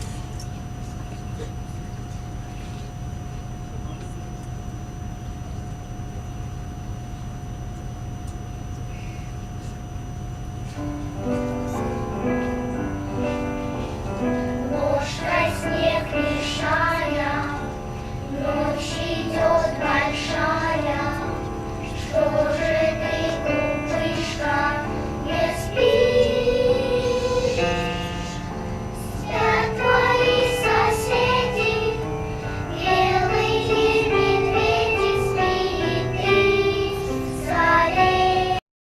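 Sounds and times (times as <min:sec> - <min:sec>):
children's choir singing: 0:11.3 - 0:38.6.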